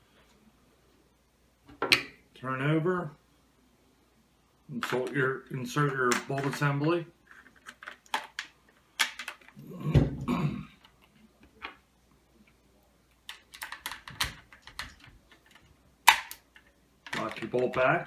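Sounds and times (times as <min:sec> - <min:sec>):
shotgun parts clicking and scraping: 0:13.3 - 0:17.9.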